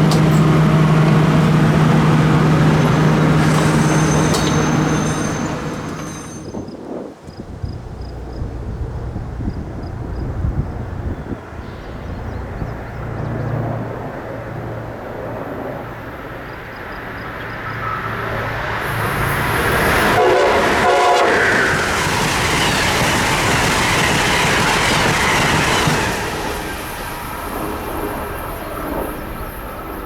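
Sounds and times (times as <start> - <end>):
train horn: 0.0 - 6.4, 18.8 - 26.4
train rushing and rail clatter: 0.0 - 30.0.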